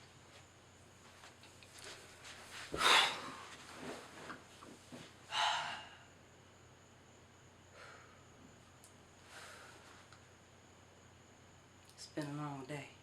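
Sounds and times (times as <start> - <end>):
person exhaling heavily: 2.8 - 3.4, 5.3 - 6.0.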